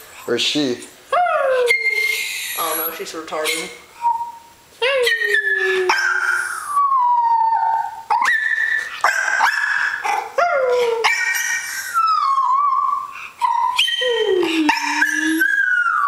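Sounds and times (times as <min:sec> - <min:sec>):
dog whine-howling: 0:01.1 - 0:03.0, 0:04.0 - 0:16.0
person howling: 0:14.0 - 0:16.0.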